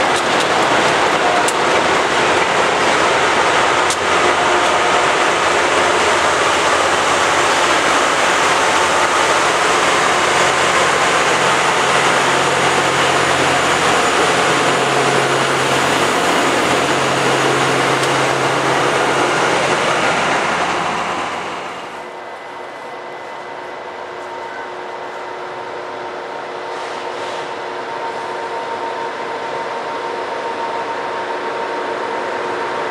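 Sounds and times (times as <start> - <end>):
engine hum: 0.0 - 22.0
rail grinder grinding hiss: 0.0 - 28.5.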